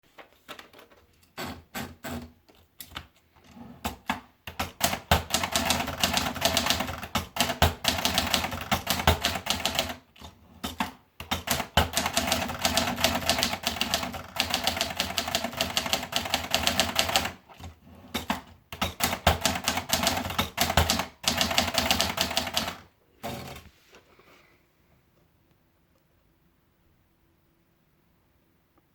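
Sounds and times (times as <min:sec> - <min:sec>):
manual typewriter keystrokes: 0:03.9 - 0:23.6.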